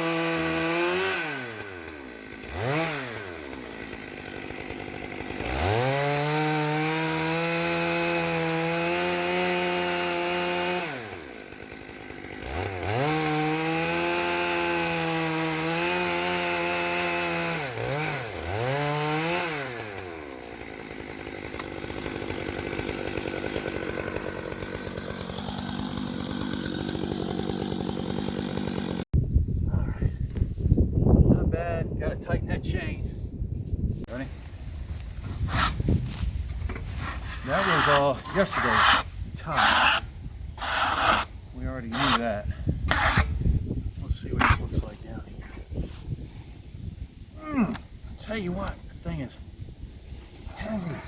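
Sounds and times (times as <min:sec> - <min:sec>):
chainsaw revving: 0:00.0 - 0:29.1, 0:36.8 - 0:43.4.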